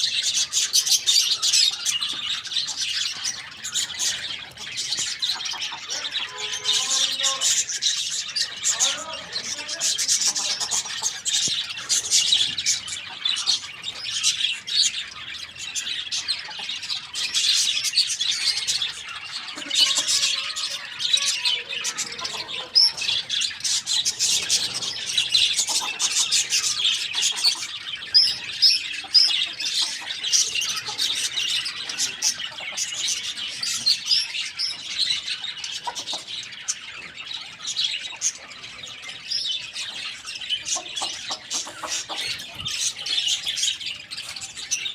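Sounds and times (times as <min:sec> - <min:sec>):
small birds chirping: 0:00.0 - 0:44.9.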